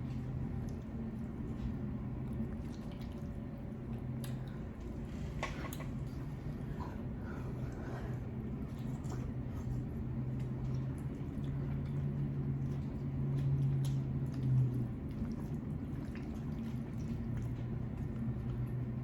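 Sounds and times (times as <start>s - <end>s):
low steady hum: 0.0s - 19.0s
person chewing food: 8.1s - 19.0s.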